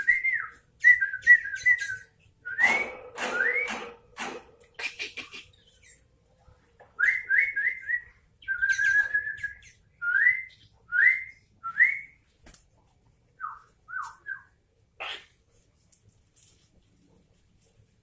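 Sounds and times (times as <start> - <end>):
bird singing whistled notes: 0.0 - 3.8, 7.0 - 12.2.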